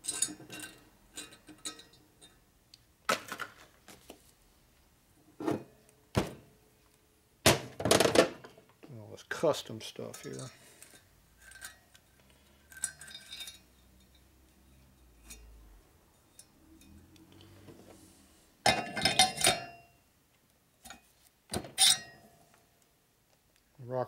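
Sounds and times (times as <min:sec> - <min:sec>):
metal parts clinking and clattering: 0:12.7 - 0:14.2.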